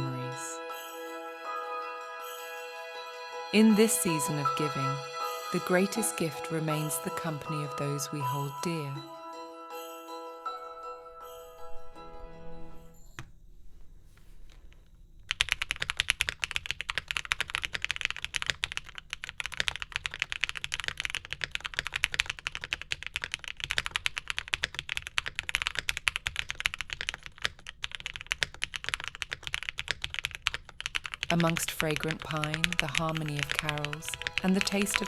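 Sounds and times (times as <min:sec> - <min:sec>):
fast mechanical keyboard typing: 0:15.3 - 0:35.0.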